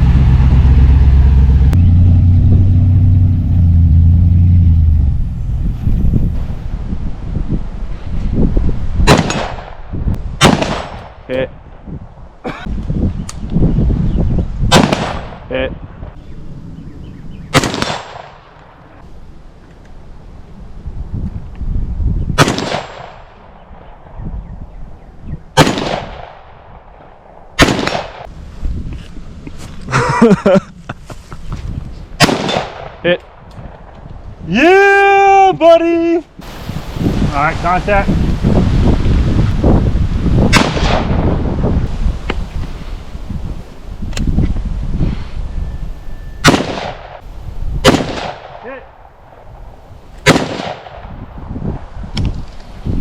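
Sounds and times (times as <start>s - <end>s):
low engine-like hum: 0.0s - 6.0s
irregular low rumbling: 0.0s - 7.8s
rifle shots with echo: 9.0s - 11.2s, 14.7s - 15.5s, 17.5s - 18.8s, 22.4s - 24.0s, 25.6s - 28.3s, 32.2s - 33.4s, 40.5s - 41.2s, 46.4s - 47.2s, 47.8s - 49.4s, 50.2s - 51.1s.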